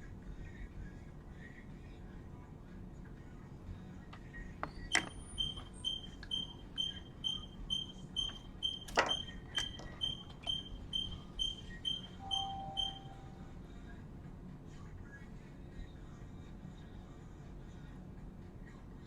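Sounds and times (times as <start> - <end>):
short high beeps: 4.9 - 13.4.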